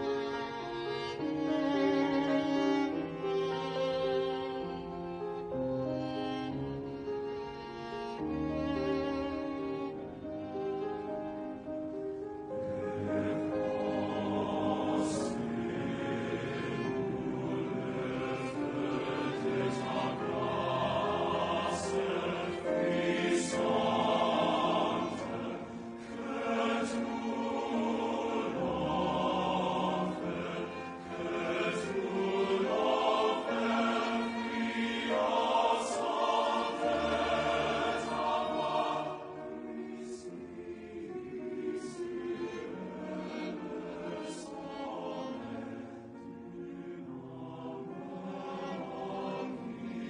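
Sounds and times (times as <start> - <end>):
men's chorus singing: 12.7 - 50.0.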